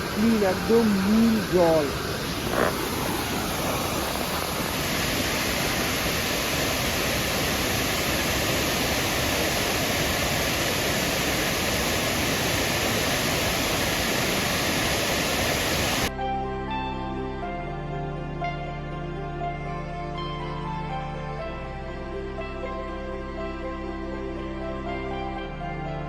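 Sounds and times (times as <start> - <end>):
music: 0.0 - 1.9, 16.1 - 26.0
waterfall pouring into pool: 0.0 - 16.1.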